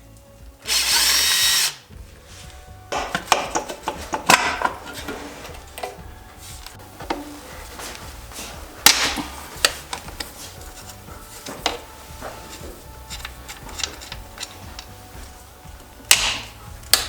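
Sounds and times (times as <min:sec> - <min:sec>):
metal parts clanking: 0:00.6 - 0:01.8, 0:02.9 - 0:17.0.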